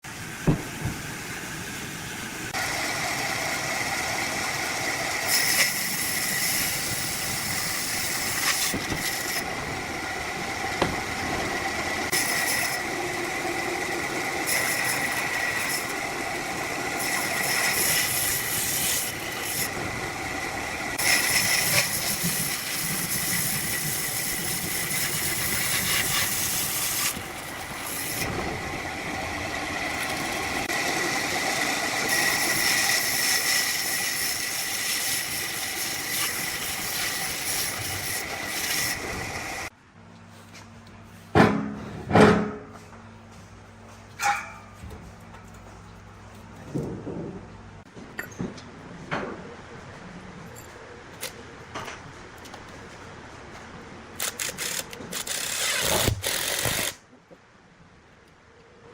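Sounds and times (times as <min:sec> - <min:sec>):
saw cutting wood: 0:02.5 - 0:39.7, 0:54.2 - 0:57.0.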